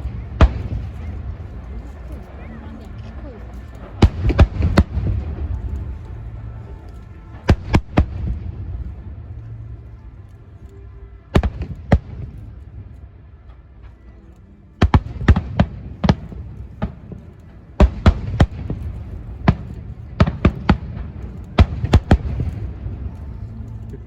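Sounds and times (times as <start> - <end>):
fireworks banging: 0.0 - 2.8, 3.9 - 6.6, 14.8 - 23.2
steady low rumble: 0.0 - 24.0.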